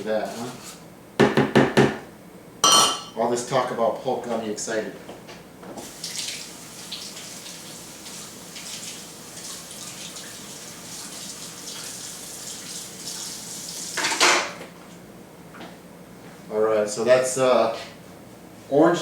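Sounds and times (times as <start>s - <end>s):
water running from faucet into sink: 5.8s - 14.4s.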